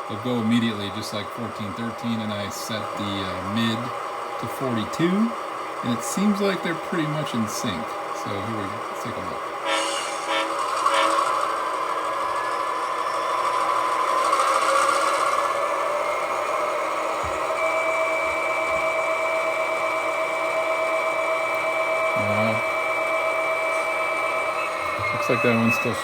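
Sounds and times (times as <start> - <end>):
model train diesel engine sound: 0.0 - 26.0
steady high tone: 16.9 - 26.0.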